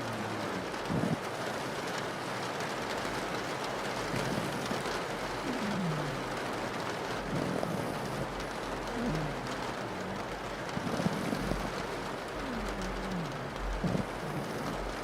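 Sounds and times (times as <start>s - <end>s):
rain on a window: 0.0s - 15.0s
dog snoring: 4.1s - 4.9s, 5.5s - 6.2s, 7.3s - 15.0s.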